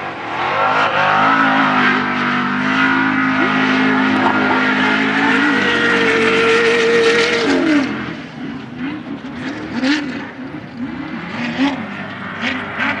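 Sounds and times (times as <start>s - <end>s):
race vehicle engine revving: 0.0s - 13.0s.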